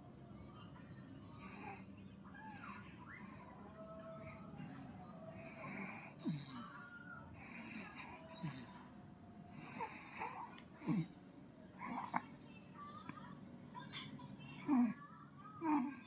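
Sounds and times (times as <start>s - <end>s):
baby snoring: 5.5s - 11.1s.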